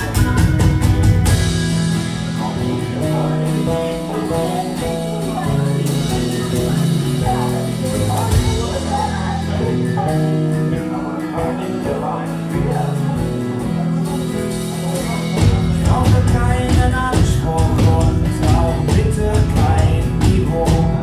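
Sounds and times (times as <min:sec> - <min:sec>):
folk band singing with guitar: 0:00.0 - 0:21.0.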